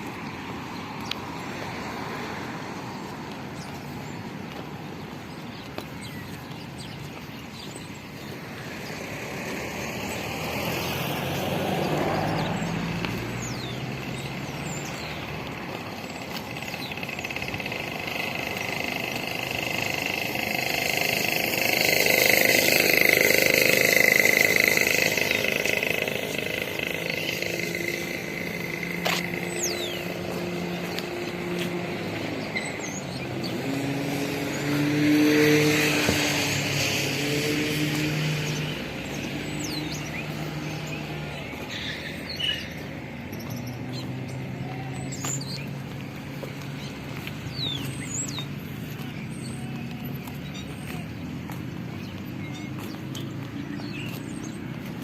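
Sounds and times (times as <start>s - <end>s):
road vehicle engines and tyres: 0.0s - 55.0s.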